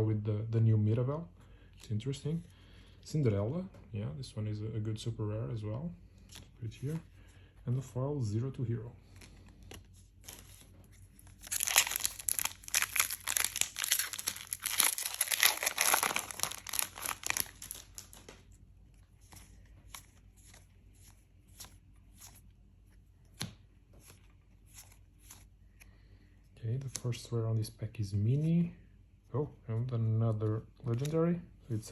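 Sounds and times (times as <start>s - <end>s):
cards being handled: 9.0s - 26.0s, 30.4s - 31.2s
foil wrapper tearing and crinkling: 11.3s - 18.3s.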